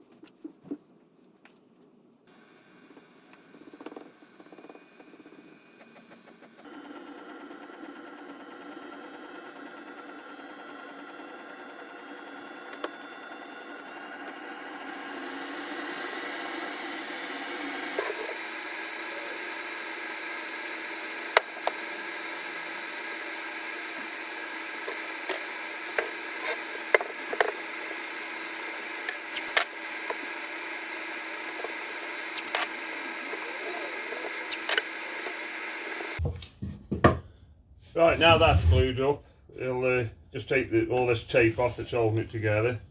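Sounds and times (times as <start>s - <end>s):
small electric motor winding up: 2.3s - 36.2s.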